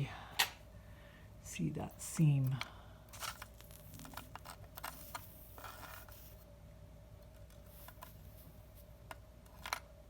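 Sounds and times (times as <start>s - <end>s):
faint steady hum: 0.0s - 10.0s
small ring clicking and scraping: 3.1s - 6.4s.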